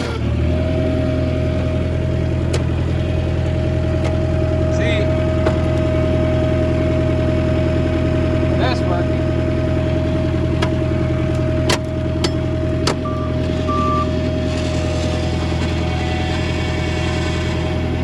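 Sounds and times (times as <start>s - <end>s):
constant whine: 0.0s - 18.0s
diesel engine running: 0.0s - 18.0s
sharp knocks: 11.6s - 13.0s
short beeps: 13.0s - 14.2s.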